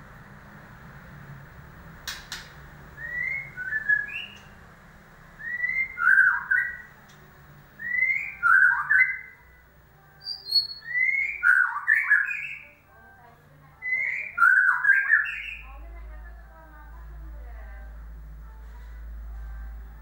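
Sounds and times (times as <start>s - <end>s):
sharp clicks: 2.0s - 2.6s
bird singing whistled notes: 3.0s - 4.6s, 5.4s - 7.0s, 7.8s - 9.4s, 10.2s - 12.8s, 13.8s - 15.8s.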